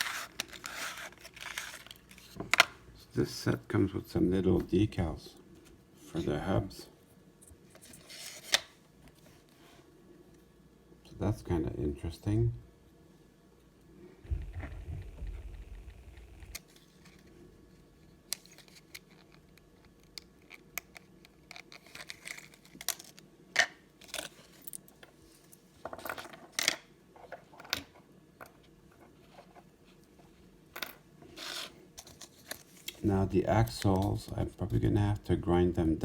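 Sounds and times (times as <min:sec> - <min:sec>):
dull bump: 0:14.2 - 0:16.1.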